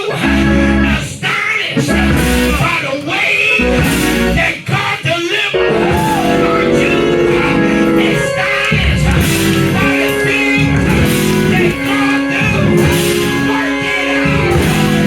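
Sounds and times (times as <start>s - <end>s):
band music with guitar: 0.0s - 4.6s, 5.5s - 15.0s.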